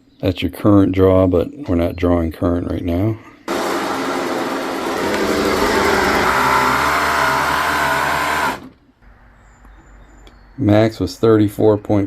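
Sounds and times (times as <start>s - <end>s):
electric motor whirring: 3.5s - 8.8s.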